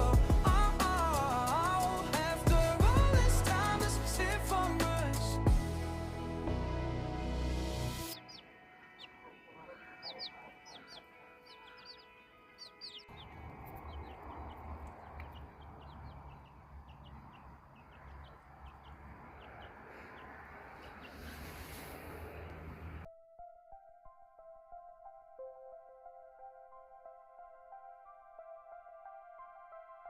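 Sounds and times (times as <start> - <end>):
chicks peeping: 8.1 - 22.6.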